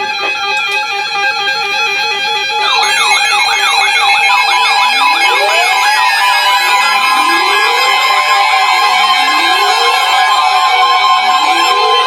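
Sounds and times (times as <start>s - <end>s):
warbling siren tone: 0.8s - 12.0s
rising siren tone: 1.3s - 12.0s
alternating alert tones: 2.6s - 10.1s.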